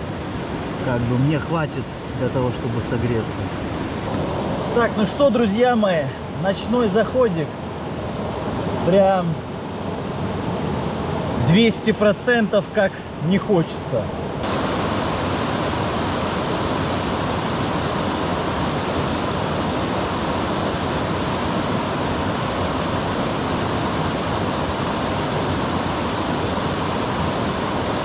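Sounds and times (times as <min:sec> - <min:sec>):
waterfall roaring: 0:00.0 - 0:05.2, 0:14.4 - 0:28.0.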